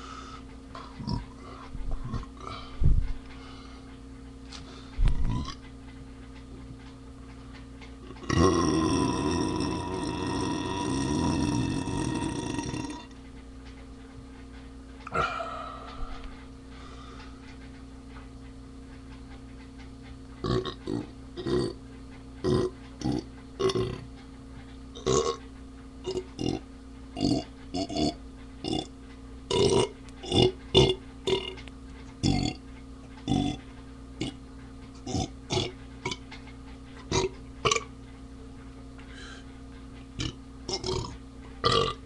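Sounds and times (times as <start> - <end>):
steady low hum: 0.0 - 42.0
person burping: 8.2 - 13.1, 15.1 - 15.5, 22.5 - 24.0, 25.0 - 25.4, 29.5 - 31.6, 37.1 - 37.9, 40.2 - 42.0.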